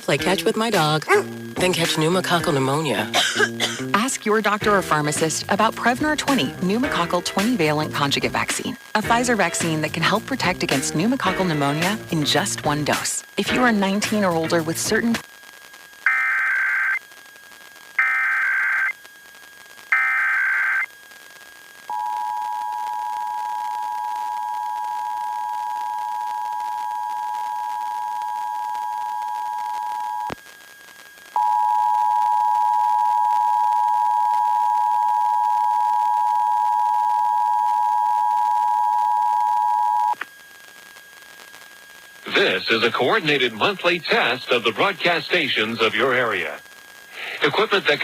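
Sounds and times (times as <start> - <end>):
faint radio hum: 0.0 - 16.0, 39.4 - 48.0
digital data bursts buzzing: 14.5 - 21.6.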